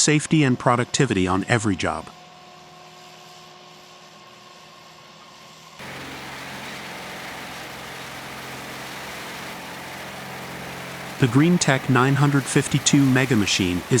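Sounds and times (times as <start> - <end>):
faint machine hum: 0.0 - 14.0
heavy machine engine running: 5.8 - 14.0.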